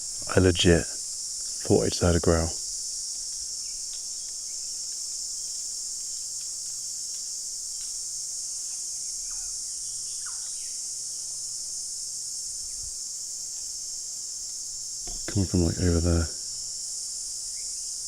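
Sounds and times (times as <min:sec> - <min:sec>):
shrill insect chorus: 0:00.0 - 0:18.0
faint bird chirps: 0:09.0 - 0:10.8.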